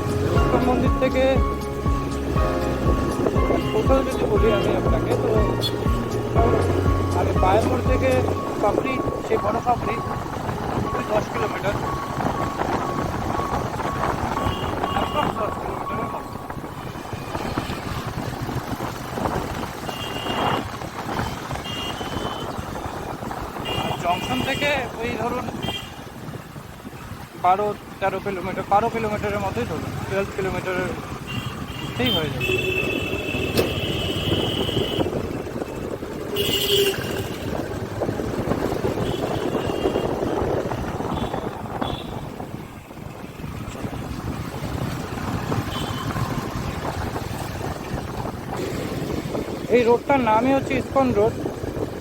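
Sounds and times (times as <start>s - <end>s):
motorcycle engine: 0.0s - 24.2s, 29.0s - 52.0s
road and wind noise: 0.0s - 52.0s
vehicle horn beeps: 13.3s - 16.4s, 19.9s - 22.7s, 31.3s - 35.2s, 36.3s - 37.4s.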